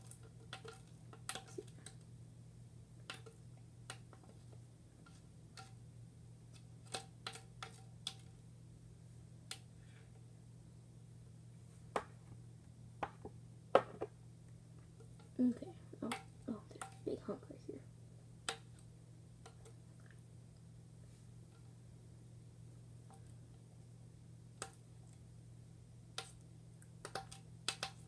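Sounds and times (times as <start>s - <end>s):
plastic stick tapping a container: 0.0s - 2.0s, 3.0s - 4.4s, 5.0s - 5.8s, 6.6s - 8.3s, 16.0s - 17.0s, 19.4s - 19.8s, 26.1s - 26.4s, 27.0s - 28.0s.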